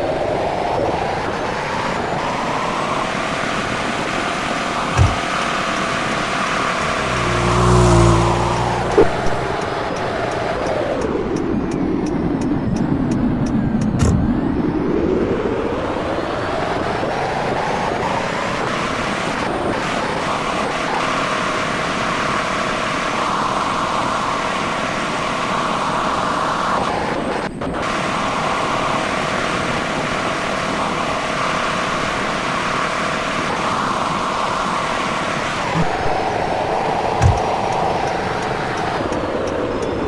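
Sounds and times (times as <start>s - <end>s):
engine running with high whine: 2.2s - 16.1s, 33.4s - 40.0s.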